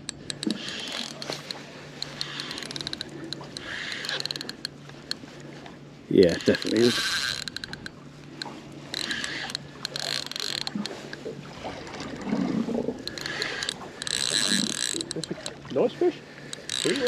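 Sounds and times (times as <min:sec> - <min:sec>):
fishing reel whirring and clicking: 0:00.0 - 0:05.5, 0:06.2 - 0:11.2, 0:11.9 - 0:15.6, 0:16.4 - 0:17.0.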